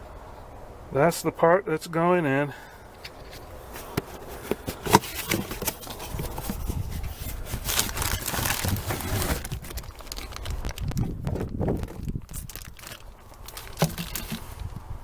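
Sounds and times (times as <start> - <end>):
packaging rustling and crinkling: 3.3 - 14.8.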